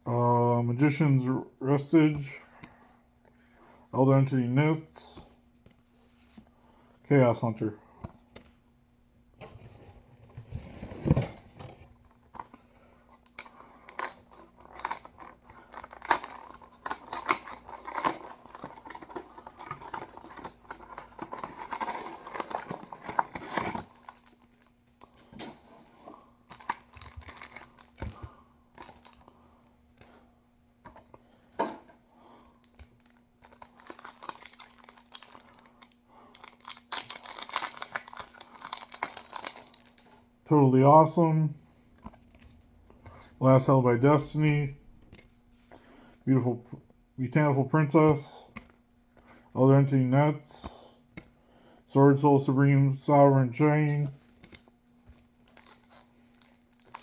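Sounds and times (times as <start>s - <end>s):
faint steady hum: 0.0s - 57.0s
cards rustling and clicking: 11.0s - 31.2s, 32.6s - 40.2s, 41.8s - 46.0s, 48.0s - 49.5s, 54.0s - 57.0s
foil pack tearing and crumpling: 33.0s - 40.1s.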